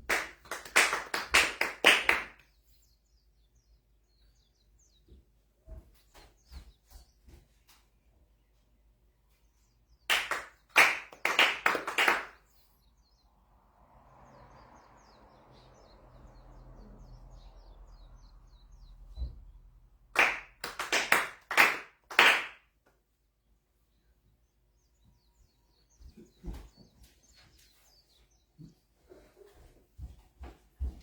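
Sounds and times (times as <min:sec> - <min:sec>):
hand claps: 0:00.0 - 0:02.5, 0:10.1 - 0:12.4, 0:20.2 - 0:22.7.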